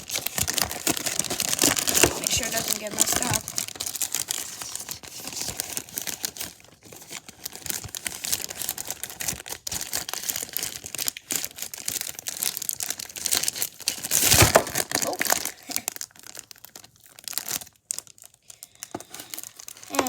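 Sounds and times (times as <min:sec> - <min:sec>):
wrapping crinkling and rustling: 0:00.0 - 0:20.0.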